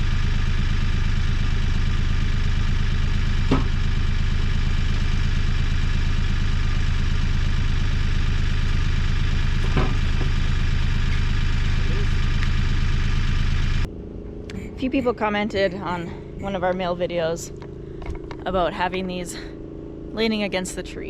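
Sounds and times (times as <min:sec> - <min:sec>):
small gasoline engine running: 0:00.0 - 0:13.9.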